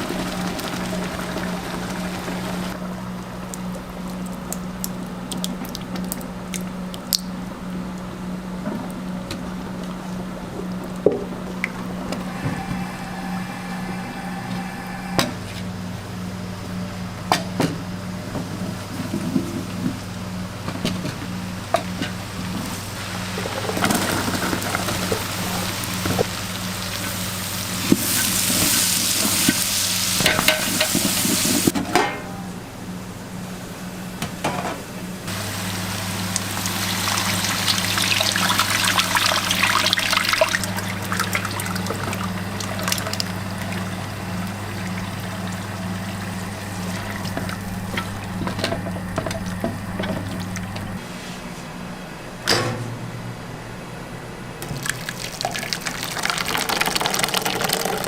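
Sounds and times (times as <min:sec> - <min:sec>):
cooking hiss: 0:00.0 - 0:05.6, 0:11.5 - 0:16.0, 0:21.0 - 0:31.8, 0:35.2 - 0:51.0
steady low hum: 0:00.0 - 0:54.9.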